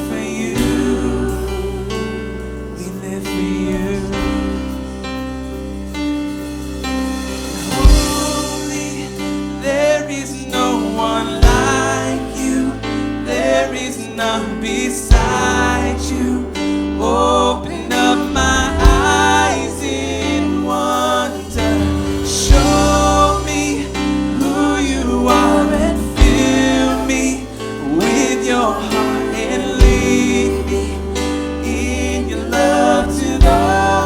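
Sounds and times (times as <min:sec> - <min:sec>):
people singing: 0:00.0 - 0:05.9, 0:07.3 - 0:34.0
worship band playing: 0:00.0 - 0:34.0
heavy drum hits: 0:03.8 - 0:10.0, 0:11.0 - 0:12.2, 0:15.1 - 0:15.8, 0:18.2 - 0:34.0.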